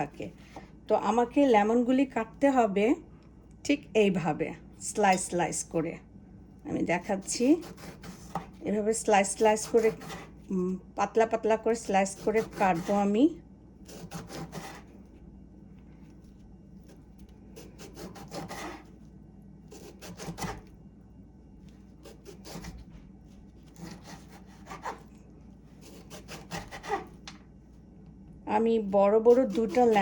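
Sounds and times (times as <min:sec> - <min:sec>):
knife slicing lemon on board: 0:07.6 - 0:08.6, 0:09.6 - 0:10.3, 0:13.9 - 0:14.9, 0:17.6 - 0:18.9, 0:19.7 - 0:20.7, 0:22.0 - 0:22.9, 0:23.7 - 0:25.0, 0:25.8 - 0:27.2.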